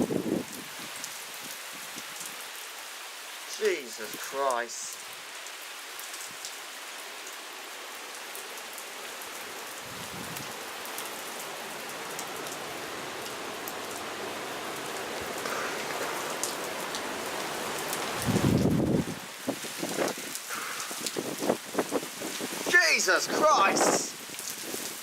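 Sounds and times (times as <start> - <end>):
heavy rain pouring: 0.0 - 25.0
low thunder rumble: 18.2 - 19.2.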